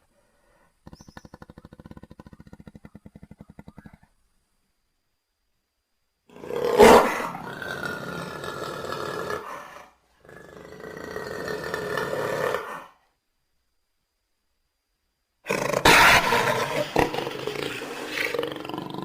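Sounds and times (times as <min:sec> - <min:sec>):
big cat-like roars: 0:06.3 - 0:13.0, 0:15.5 - 0:19.0.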